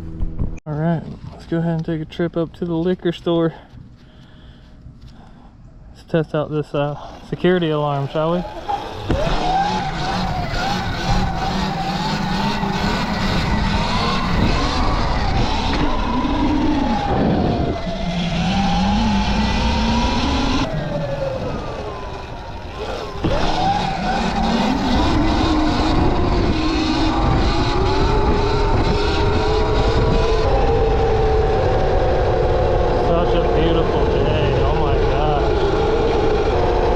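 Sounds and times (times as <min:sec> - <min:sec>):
wind and road noise: 0:00.0 - 0:36.9
electric motor whine: 0:07.5 - 0:36.9.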